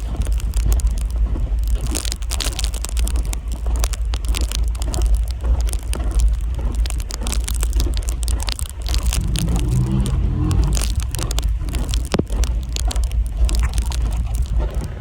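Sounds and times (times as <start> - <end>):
dense crackling and crunching: 0.0 - 15.0
wind buffeting microphone: 4.8 - 15.0.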